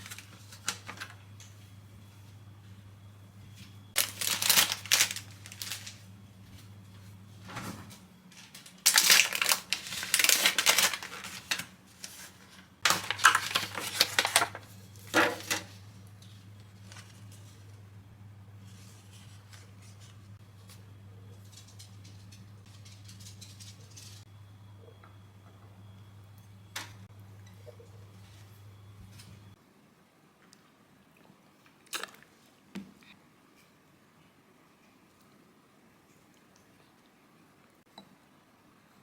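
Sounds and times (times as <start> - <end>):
steady low hum: 0.0 - 29.8
packaging crinkling: 4.0 - 6.1, 8.4 - 15.8.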